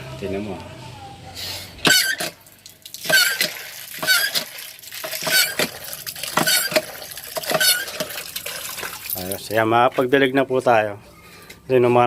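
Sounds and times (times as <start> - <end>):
water pump handle squeaky honk: 1.9 - 2.3, 3.1 - 4.5, 5.2 - 5.7, 6.4 - 8.1
water splashing: 1.9 - 10.0.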